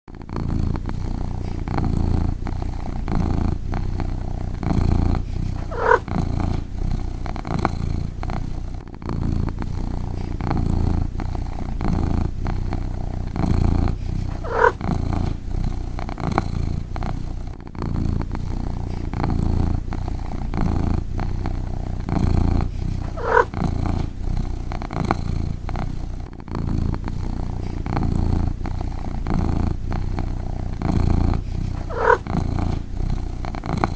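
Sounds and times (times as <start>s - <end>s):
cat snoring: 0.1s - 33.9s.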